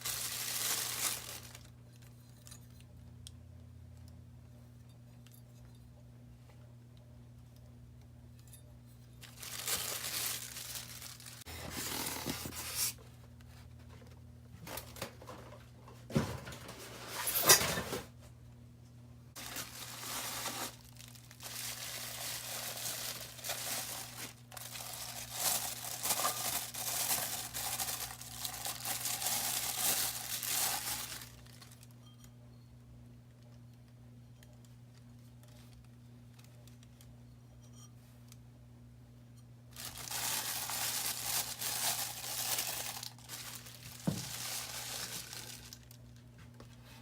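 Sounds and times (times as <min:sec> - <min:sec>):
packaging tearing and crinkling: 0:00.0 - 0:01.7, 0:09.2 - 0:13.0, 0:19.4 - 0:31.8, 0:39.8 - 0:46.0.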